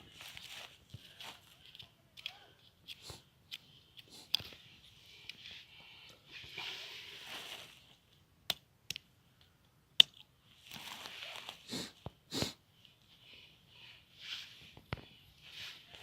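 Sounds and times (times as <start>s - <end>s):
sticks rustling and scraping: 0.0s - 8.2s, 10.5s - 12.5s, 14.1s - 16.0s.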